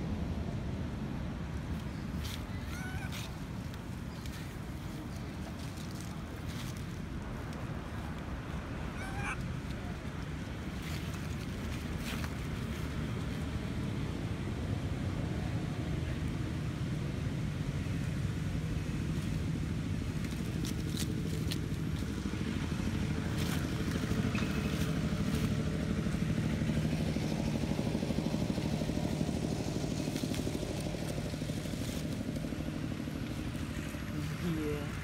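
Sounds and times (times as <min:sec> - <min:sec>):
motor engine running: 0:18.5 - 0:35.0.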